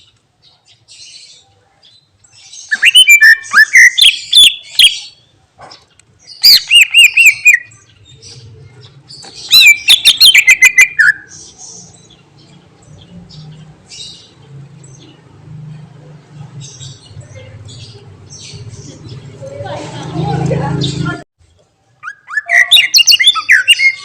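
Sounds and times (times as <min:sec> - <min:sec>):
bird whistling rapid notes: 0:02.7 - 0:04.9, 0:06.4 - 0:07.7, 0:09.5 - 0:11.3.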